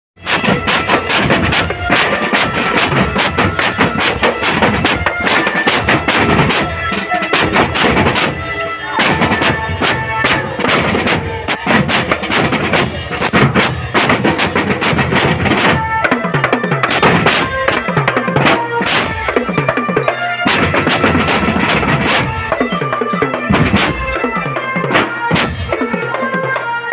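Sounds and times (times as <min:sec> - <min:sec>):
snare and bass drum beats: 0:00.2 - 0:26.9
short melodic band notes: 0:20.2 - 0:26.6.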